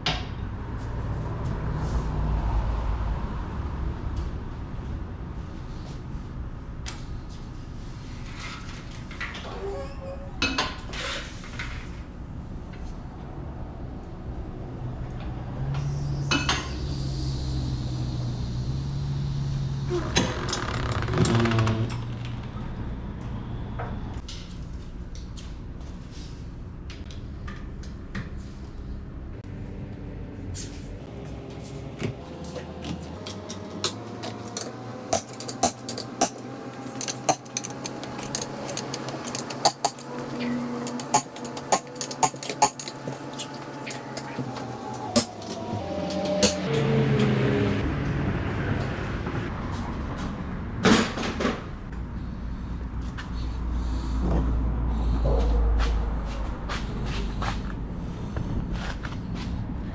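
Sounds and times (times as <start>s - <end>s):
metal tools clinking: 32.5s - 46.8s.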